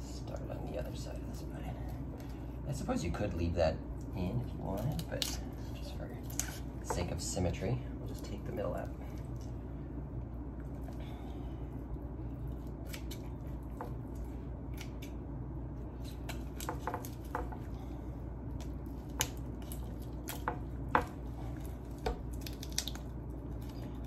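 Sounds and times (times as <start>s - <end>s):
scissors snipping and crunching bone: 4.6s - 5.4s, 12.6s - 14.0s, 14.7s - 15.2s, 18.5s - 24.0s.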